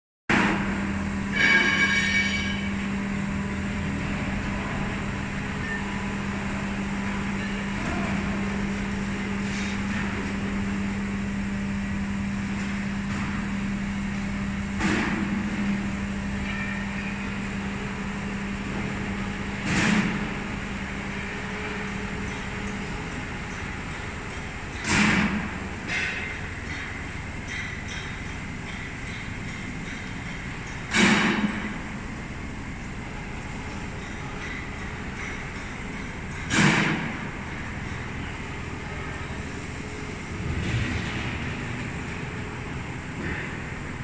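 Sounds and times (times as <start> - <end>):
machinery humming: 0.3 - 44.0
metallic ringing tone: 16.3 - 17.6.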